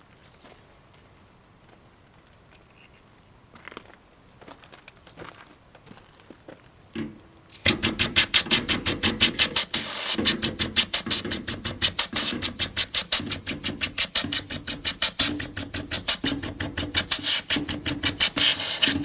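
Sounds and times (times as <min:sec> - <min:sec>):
rapid compressed air blasts: 0:07.1 - 0:19.0
steady air hiss: 0:07.5 - 0:19.0.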